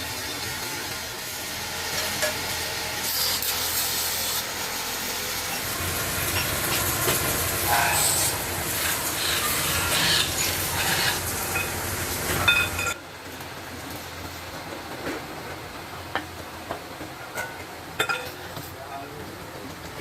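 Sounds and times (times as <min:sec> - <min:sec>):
metal rubbing: 0:06.2 - 0:13.0.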